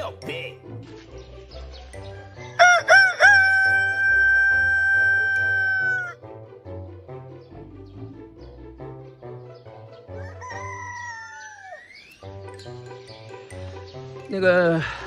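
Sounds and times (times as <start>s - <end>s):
rooster crowing: 2.6s - 6.2s, 10.2s - 11.9s.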